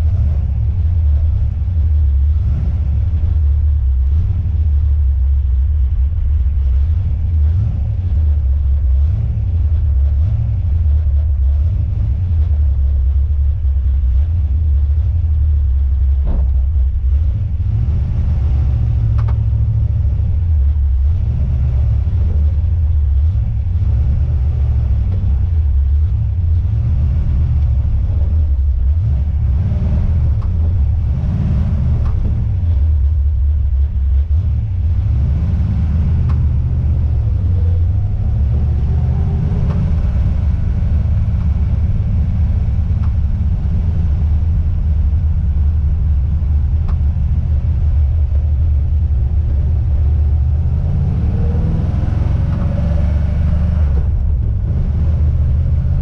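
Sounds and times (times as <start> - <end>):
car engine and road rumble: 0.0 - 56.0
faint suspension clicks: 18.9 - 19.7, 30.2 - 30.8, 31.8 - 34.3, 36.2 - 38.0, 42.8 - 43.7, 44.7 - 49.0.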